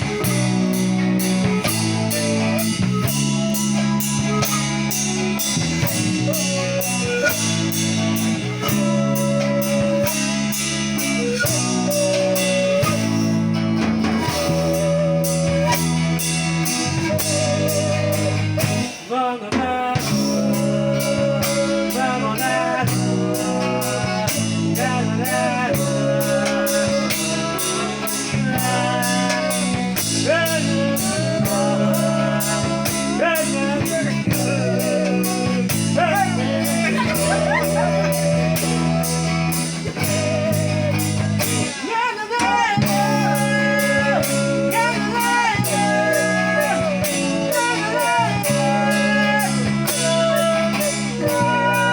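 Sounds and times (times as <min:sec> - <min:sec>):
bamboo pan pipes: 0:00.0 - 0:51.9
person singing: 0:00.0 - 0:51.9
steady beat: 0:20.0 - 0:41.8.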